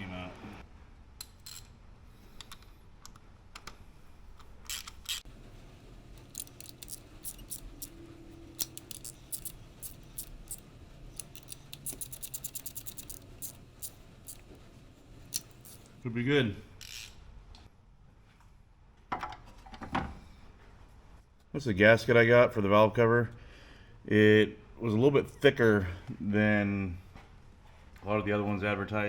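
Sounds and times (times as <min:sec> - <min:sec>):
socket ratchet clicking: 0:04.4 - 0:05.3, 0:06.2 - 0:14.5, 0:15.3 - 0:15.9, 0:16.8 - 0:17.2.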